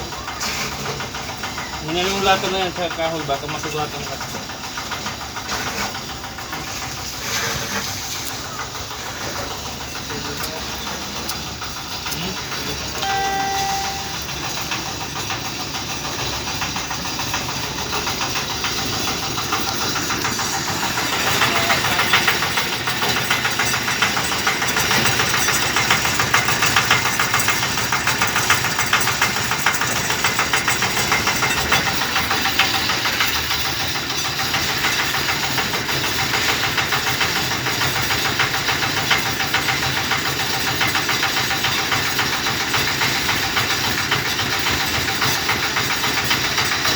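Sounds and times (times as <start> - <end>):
truck engine and vacuum pump: 0.0 - 46.9
short pitched tone: 13.0 - 14.4.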